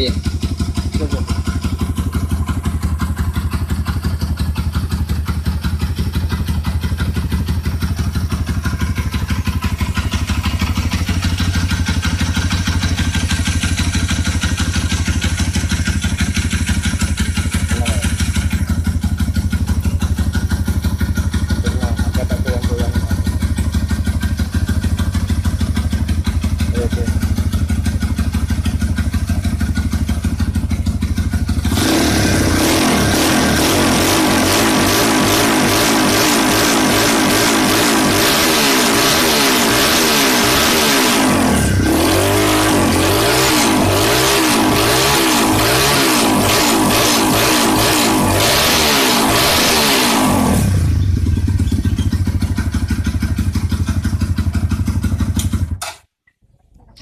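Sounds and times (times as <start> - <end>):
motorcycle engine idling: 0.0 - 37.7, 50.6 - 55.8.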